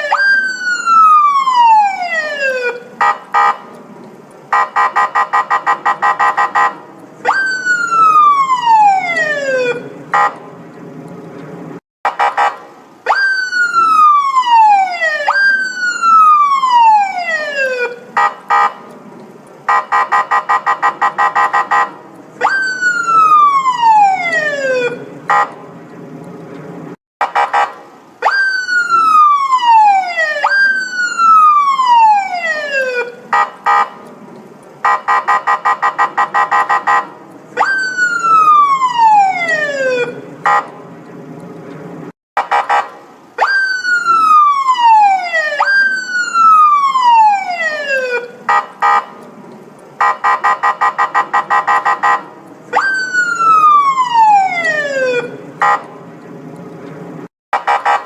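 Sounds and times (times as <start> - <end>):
electronic police siren: 0.0 - 3.6, 4.5 - 10.4, 12.1 - 18.7, 19.7 - 25.5, 27.3 - 33.9, 34.8 - 40.7, 42.4 - 49.0, 50.0 - 55.9.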